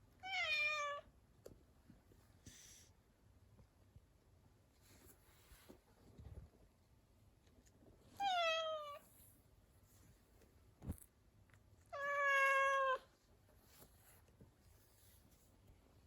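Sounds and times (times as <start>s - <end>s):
cat meowing: 0.2s - 1.1s, 8.2s - 9.0s, 11.9s - 13.1s.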